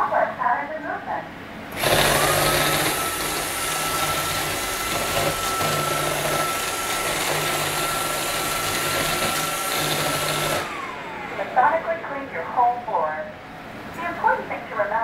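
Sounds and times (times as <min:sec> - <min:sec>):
robot vacuum motor whine: 0:01.7 - 0:11.6.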